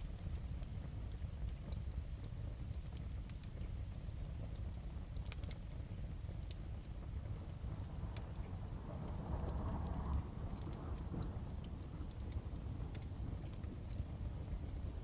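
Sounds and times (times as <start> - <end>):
sharp pops and snaps: 0.0 - 15.0
wood fire crackling: 0.0 - 15.0
storm rumble: 7.0 - 15.0
thunder: 8.8 - 13.4.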